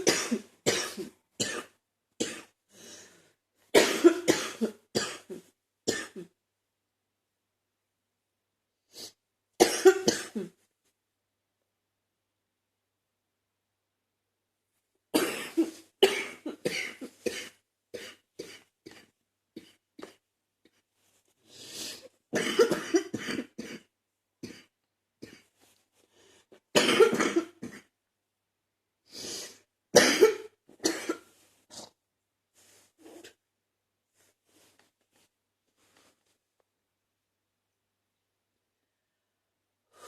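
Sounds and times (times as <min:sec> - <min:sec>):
woman coughing wetly: 0:00.0 - 0:02.5, 0:03.8 - 0:06.3, 0:09.6 - 0:10.5, 0:15.2 - 0:19.0, 0:22.4 - 0:25.4, 0:26.8 - 0:27.9, 0:30.0 - 0:31.2.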